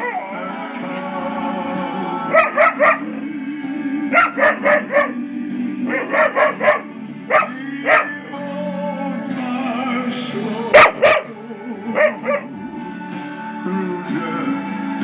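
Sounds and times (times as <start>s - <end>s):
background music: 0.0s - 15.0s
dog barking: 2.3s - 3.2s, 4.1s - 5.2s, 5.9s - 8.2s, 10.8s - 12.6s.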